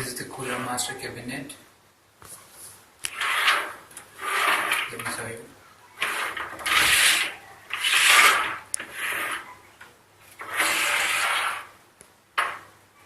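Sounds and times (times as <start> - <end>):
pc case scraping: 3.1 - 5.4, 6.0 - 9.5, 10.3 - 11.8.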